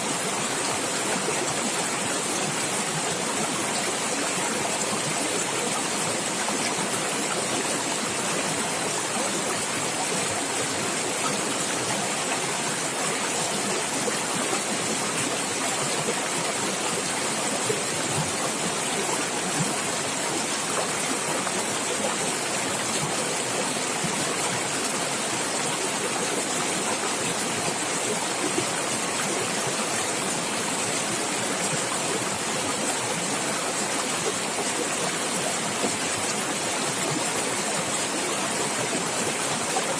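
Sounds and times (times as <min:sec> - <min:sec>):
stream gurgling and splashing: 0:00.0 - 0:39.9.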